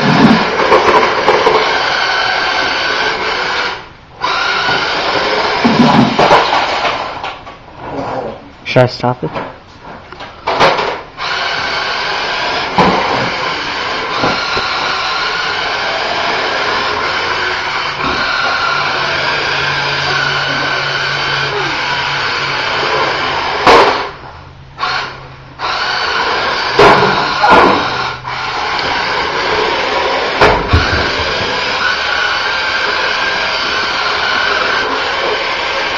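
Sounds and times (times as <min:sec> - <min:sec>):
toy car electric motor whirring: 0:00.0 - 0:07.1, 0:10.7 - 0:24.1, 0:24.8 - 0:35.9.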